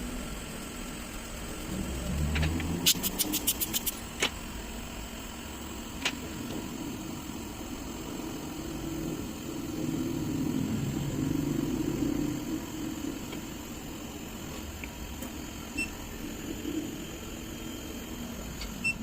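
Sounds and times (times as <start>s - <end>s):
low machine hum: 0.0s - 19.0s
sharp clicks: 2.4s - 4.0s.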